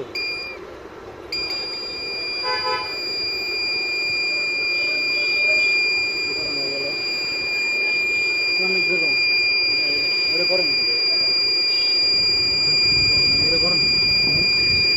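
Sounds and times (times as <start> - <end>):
high-pitched alarm buzzer: 1.3 - 14.9.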